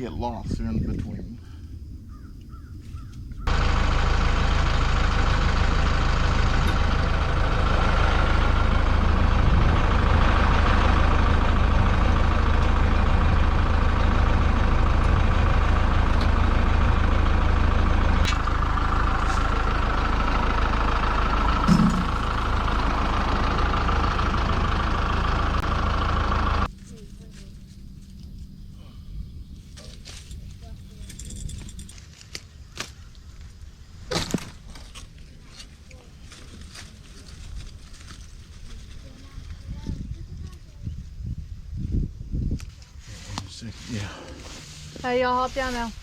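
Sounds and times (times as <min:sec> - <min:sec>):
tractor engine running: 0:03.4 - 0:28.7, 0:34.6 - 0:46.0
brief low knock: 0:21.7 - 0:22.2.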